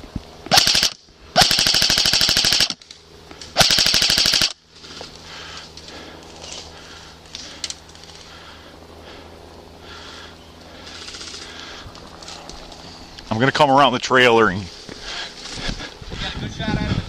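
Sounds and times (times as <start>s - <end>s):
airsoft rifle full auto bursts: 0.5s - 2.8s, 3.6s - 4.6s.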